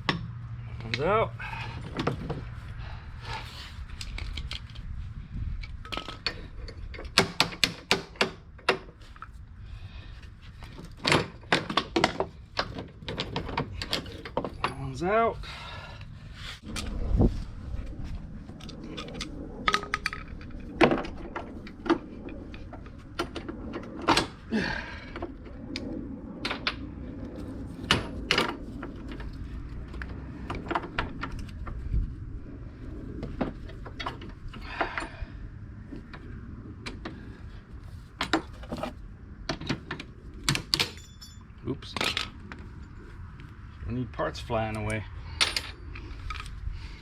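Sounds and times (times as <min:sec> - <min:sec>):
metal tools clinking on steel: 0:13.1 - 0:15.2, 0:40.6 - 0:42.9.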